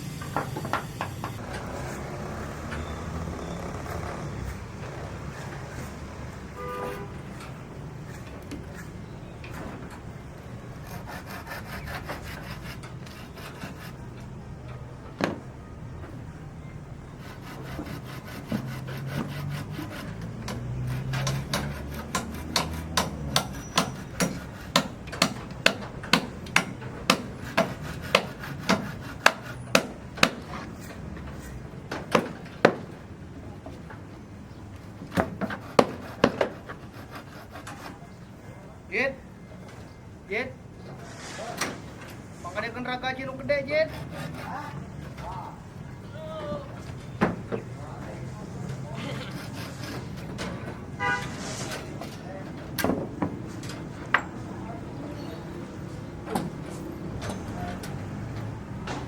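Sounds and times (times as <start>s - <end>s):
hand sawing wood: 10.6s - 14.2s, 17.1s - 32.9s, 35.0s - 38.4s, 43.2s - 45.7s, 48.7s - 53.0s.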